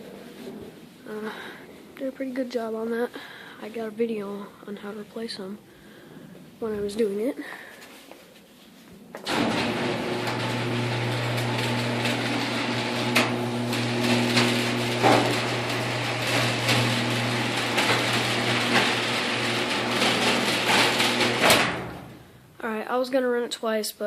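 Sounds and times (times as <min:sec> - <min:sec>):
garage door opener motor hum: 0:09.2 - 0:22.3
garage door rattling: 0:09.2 - 0:22.3.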